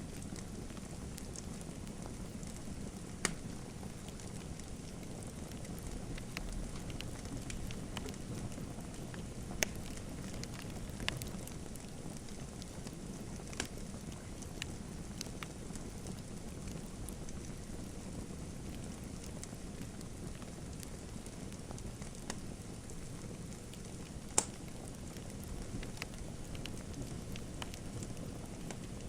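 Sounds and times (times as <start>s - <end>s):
wood fire crackling: 0.0s - 29.0s
sharp pops of fire: 3.2s - 3.5s, 13.4s - 13.8s, 24.3s - 24.8s.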